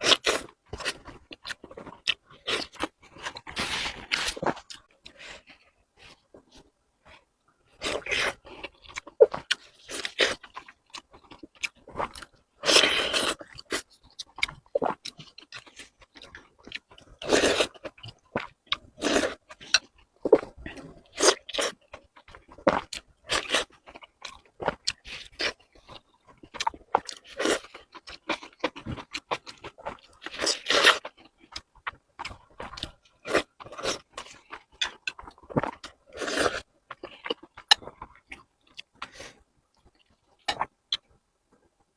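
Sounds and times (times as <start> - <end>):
crunchy wet chewing: 7.7 - 41.1.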